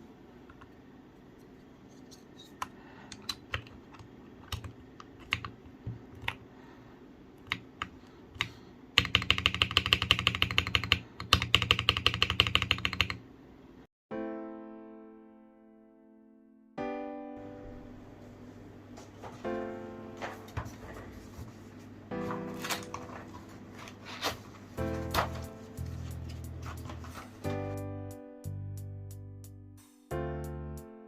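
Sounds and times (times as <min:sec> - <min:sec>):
mechanical keyboard typing: 0:02.6 - 0:06.4, 0:07.4 - 0:13.2
piano music: 0:14.1 - 0:31.0.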